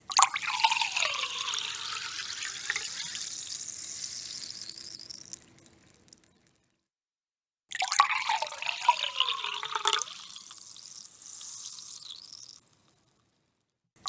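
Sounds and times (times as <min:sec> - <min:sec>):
sparkling water pouring: 0:00.1 - 0:06.3, 0:07.8 - 0:12.8
fizzing hiss: 0:00.3 - 0:05.3.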